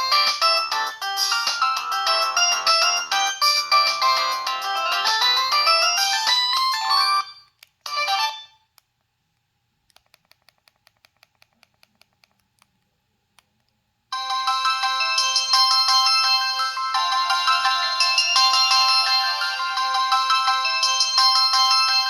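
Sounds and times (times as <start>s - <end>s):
electronic ringtone tune: 0.0s - 7.4s, 14.1s - 22.0s
faint evenly spaced clicks: 8.6s - 13.8s.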